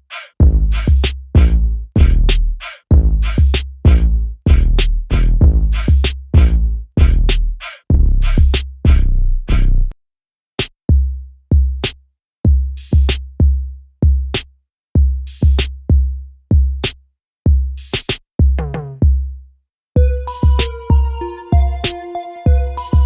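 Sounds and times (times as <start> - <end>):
drum machine beat: 0.2 - 2.3, 2.9 - 9.0, 10.6 - 19.3, 20.0 - 23.0
melodic electronic notes: 20.0 - 23.0.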